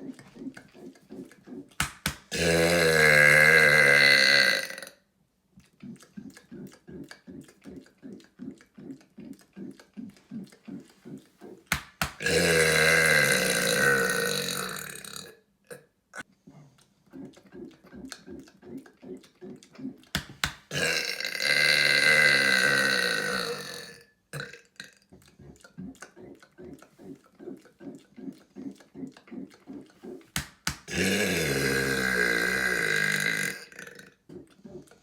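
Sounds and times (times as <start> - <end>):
man burping loudly: 2.3 - 5.0, 12.2 - 15.8, 20.7 - 25.0, 30.9 - 34.1.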